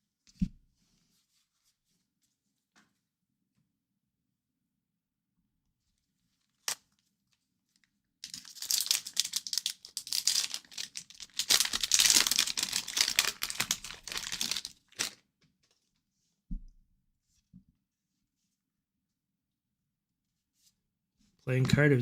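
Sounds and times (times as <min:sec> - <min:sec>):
wrapper tearing and crinkling: 0:08.2 - 0:15.2.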